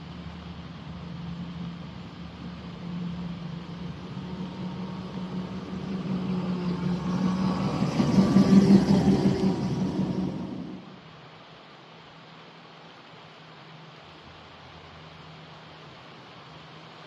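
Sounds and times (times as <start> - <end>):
model locomotive engine hum: 0.0 - 11.7
train rattling on track: 1.0 - 11.0.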